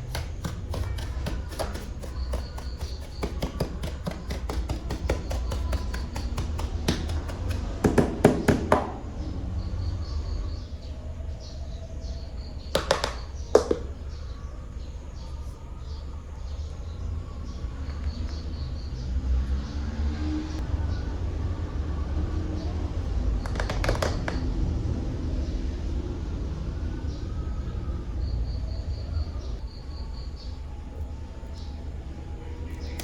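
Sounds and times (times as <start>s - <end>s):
sharp knocks: 0.0s - 9.1s, 12.8s - 14.0s.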